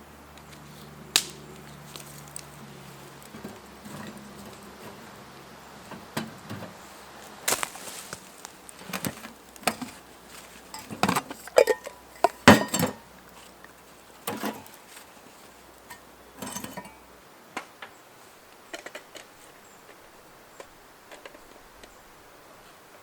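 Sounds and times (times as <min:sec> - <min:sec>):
metal cooking gear clinking: 0:08.8 - 0:13.1, 0:15.8 - 0:17.0.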